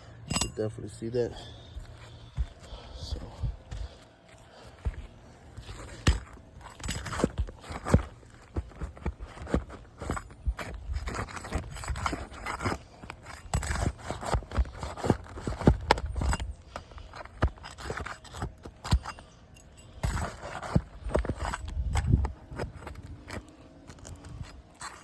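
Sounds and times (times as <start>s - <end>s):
scraping on roof shingles: 3.7s - 19.1s.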